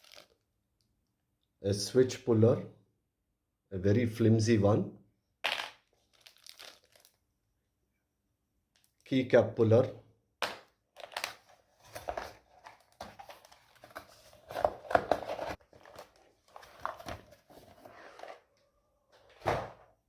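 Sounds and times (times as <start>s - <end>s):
plastic packaging crinkling: 0.0s - 0.4s, 5.9s - 7.2s, 11.0s - 17.8s.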